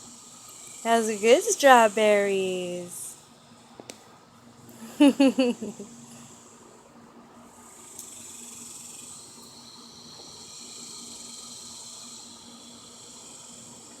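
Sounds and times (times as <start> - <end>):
insects calling: 0.0 - 3.7, 7.4 - 14.0.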